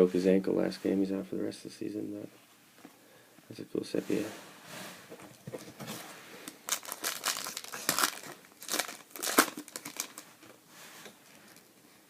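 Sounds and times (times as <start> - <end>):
foil wrapper crinkling: 6.5 - 10.5.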